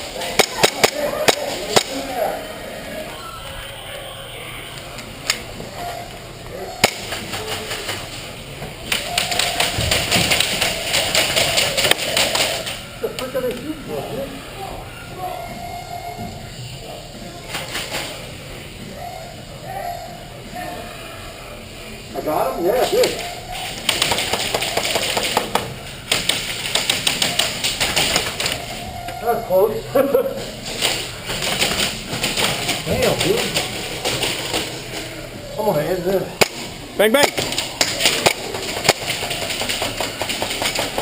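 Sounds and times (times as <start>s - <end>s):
airsoft guns firing: 0.2s - 1.9s, 8.9s - 12.7s, 36.4s - 41.0s.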